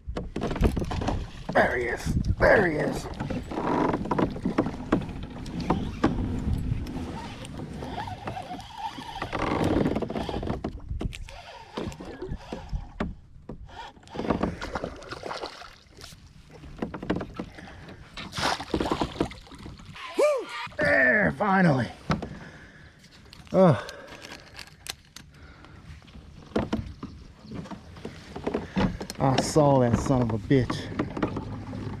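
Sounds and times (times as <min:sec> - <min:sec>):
knocks clicks and rustling on kayak: 0:00.0 - 0:32.0
low rumble of wind and water: 0:00.0 - 0:32.0.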